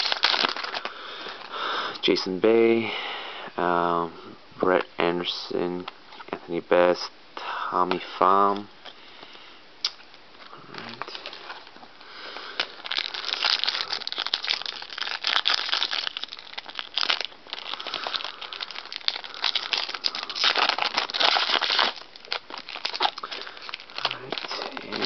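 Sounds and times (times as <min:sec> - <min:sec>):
foil wrapper crinkling and tearing: 0:00.0 - 0:01.6, 0:10.7 - 0:25.0.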